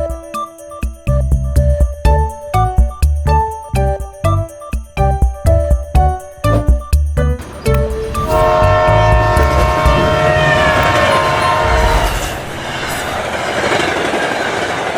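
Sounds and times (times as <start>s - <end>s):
train rumbling on rails: 7.4s - 14.9s
train horn: 7.9s - 12.9s.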